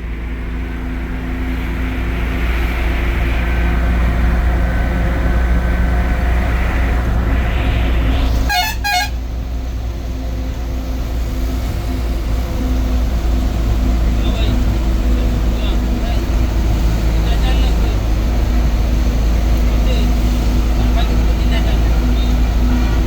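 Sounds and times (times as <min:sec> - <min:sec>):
bus engine droning: 0:00.0 - 0:23.0
horn toots: 0:08.3 - 0:09.4.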